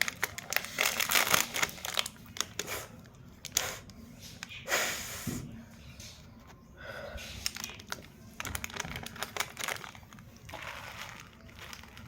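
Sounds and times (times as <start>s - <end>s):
person crunching snacks: 7.5s - 12.0s.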